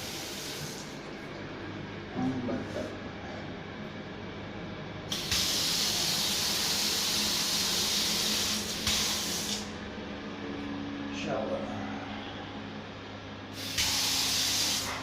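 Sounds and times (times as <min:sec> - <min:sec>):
water spraying from a tap: 0:00.0 - 0:01.0, 0:05.1 - 0:09.7, 0:13.6 - 0:15.0.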